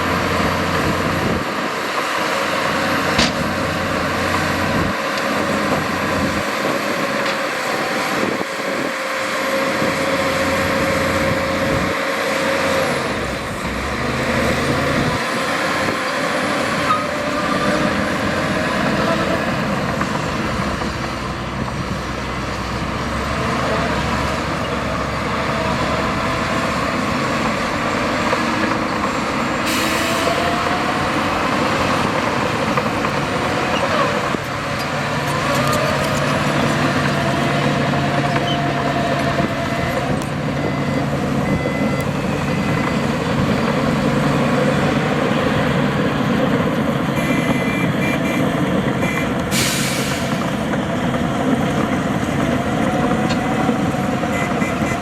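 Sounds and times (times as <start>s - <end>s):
diesel machinery running: 0.0s - 55.0s
burst of hiss: 49.5s - 50.4s.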